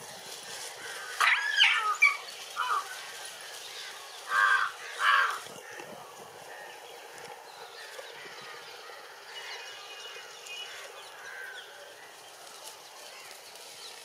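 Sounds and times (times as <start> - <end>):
animal calls: 1.2 - 3.0.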